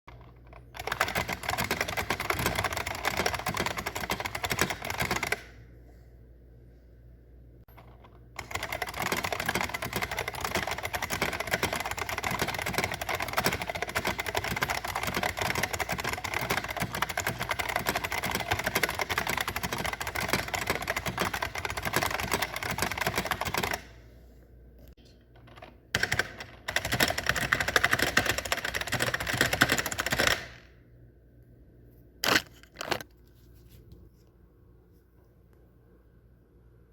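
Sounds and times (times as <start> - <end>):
fast typing on clicky keyboard: 0.1 - 5.6, 7.8 - 23.9, 26.0 - 30.6.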